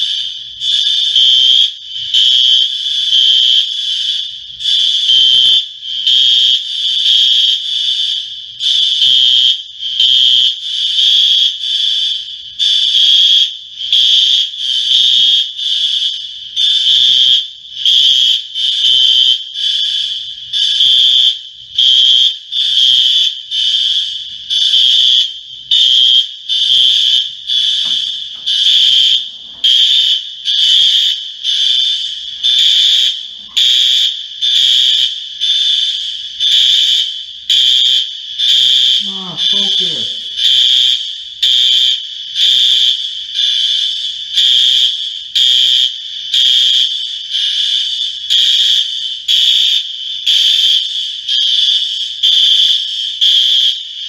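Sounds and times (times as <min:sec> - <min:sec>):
fire alarm beeping: 0:00.0 - 0:54.0.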